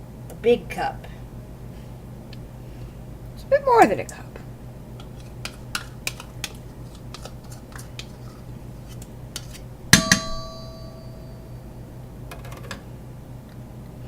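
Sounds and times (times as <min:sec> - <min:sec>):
steady low hum: 0:00.0 - 0:14.0
dish clanging and ringing: 0:10.0 - 0:11.6.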